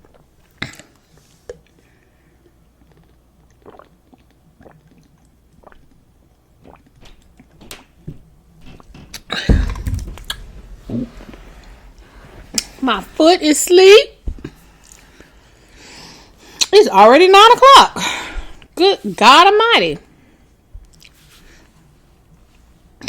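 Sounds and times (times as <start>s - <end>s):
chewing mouth sounds: 2.8s - 6.0s.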